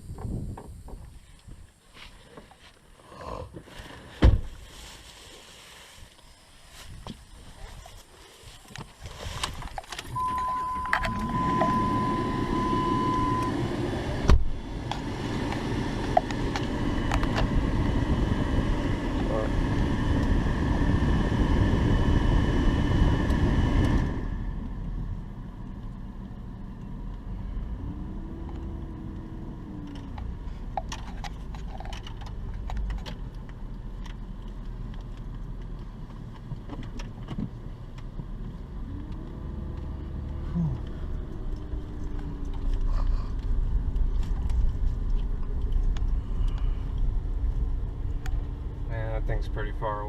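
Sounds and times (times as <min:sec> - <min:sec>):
car engine rumble: 0:00.0 - 0:50.0
road and wind noise: 0:00.0 - 0:50.0
rattles and clicks: 0:29.8 - 0:48.5.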